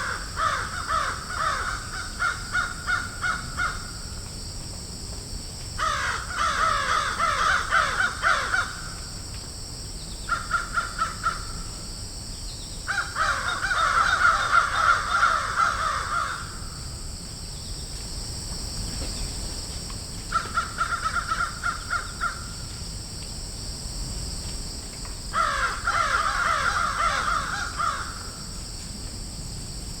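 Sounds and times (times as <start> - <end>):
crows cawing: 0.0 - 4.0, 5.8 - 8.9, 10.3 - 11.6, 12.9 - 16.8, 20.3 - 22.6, 25.3 - 28.4.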